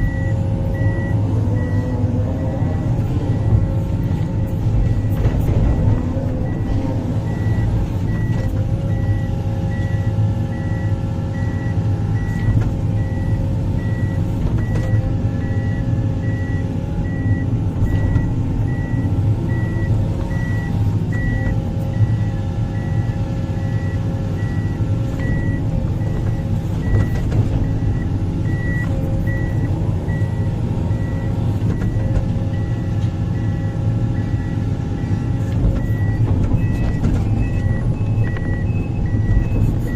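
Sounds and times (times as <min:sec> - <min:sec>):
backup alarm beeping: 0:00.0 - 0:02.7, 0:03.3 - 0:39.9
diesel engine running: 0:00.0 - 0:39.9.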